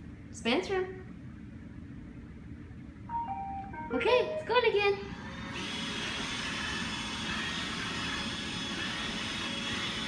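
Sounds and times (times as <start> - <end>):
robot vacuum whirring: 5.1 - 10.0.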